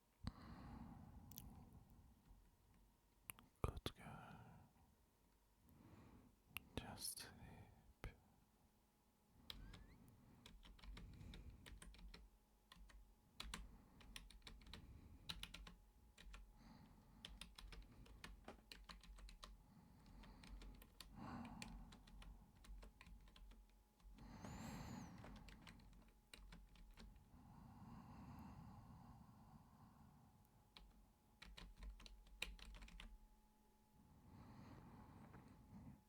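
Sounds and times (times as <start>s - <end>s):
keyboard typing clicks: 9.5s - 16.5s, 17.2s - 27.1s, 30.8s - 33.2s.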